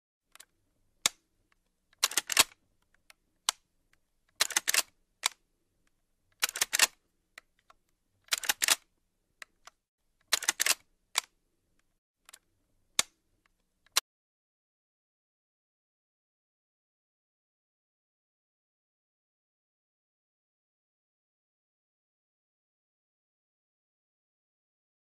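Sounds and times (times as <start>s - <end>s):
shotgun action metallic clacks: 2.0s - 2.5s, 10.3s - 10.8s
shotgun clicks: 2.0s - 2.6s, 4.4s - 5.4s, 6.4s - 7.0s, 8.3s - 8.8s, 10.3s - 11.3s.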